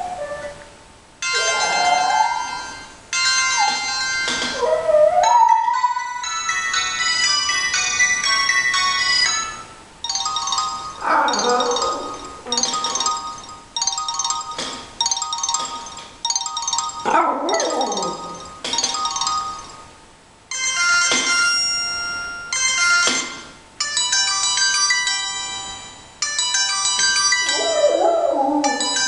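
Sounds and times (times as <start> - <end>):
chiming phone ringtone: 1.2 - 4.6, 5.2 - 19.9, 20.5 - 29.0
electronic phone ringtone: 5.3 - 19.9, 20.5 - 28.0, 28.6 - 29.0
dog howling: 11.0 - 12.1, 27.5 - 28.9.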